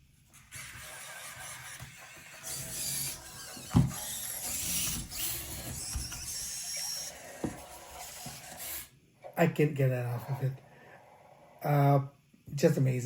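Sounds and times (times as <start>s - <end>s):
robot servo motors whirring: 0.4s - 8.9s.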